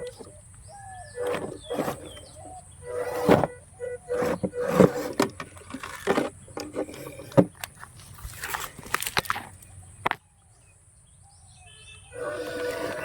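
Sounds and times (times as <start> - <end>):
small electric motor whirring: 1.0 - 5.3, 12.2 - 13.0.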